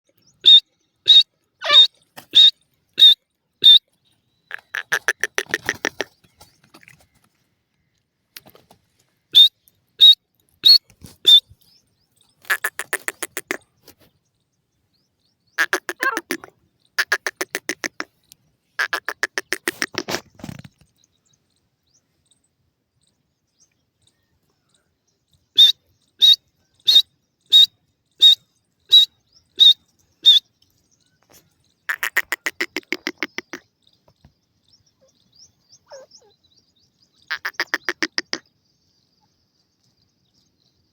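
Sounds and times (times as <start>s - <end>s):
bird calling: 0.1s - 7.4s, 9.3s - 11.6s, 12.4s - 14.0s, 15.5s - 18.2s, 18.8s - 20.7s, 25.5s - 30.5s, 31.2s - 36.5s, 37.1s - 38.5s.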